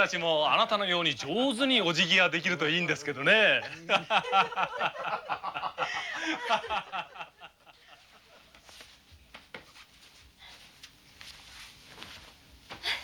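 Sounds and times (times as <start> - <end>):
people laughing: 3.6 - 8.6.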